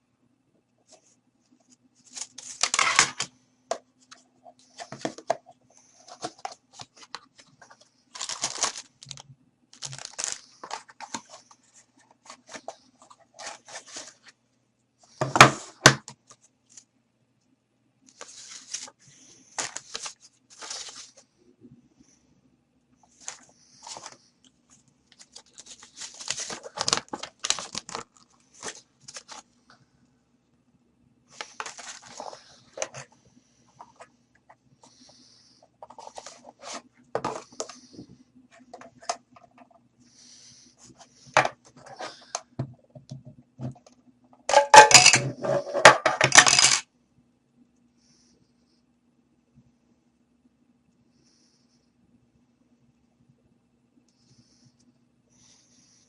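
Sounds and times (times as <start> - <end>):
packaging and gadget handling: 2.0 - 3.3, 4.1 - 14.3, 19.6 - 21.2, 23.1 - 24.2, 25.1 - 29.4, 31.4 - 33.1, 35.8 - 38.1, 44.5 - 46.8
rustling and clattering: 40.9 - 46.8.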